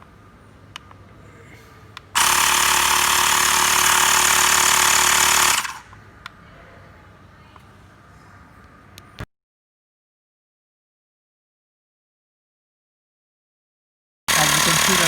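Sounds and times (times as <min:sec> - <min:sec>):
air compressor running: 0:02.0 - 0:06.0, 0:14.3 - 0:15.0.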